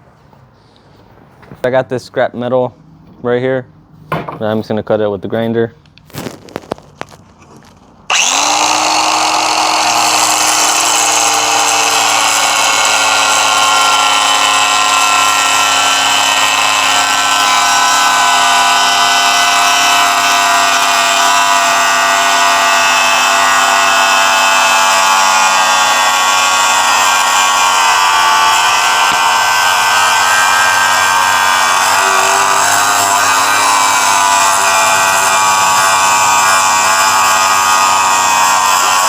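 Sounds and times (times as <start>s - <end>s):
angle grinder cutting metal: 8.1s - 39.0s.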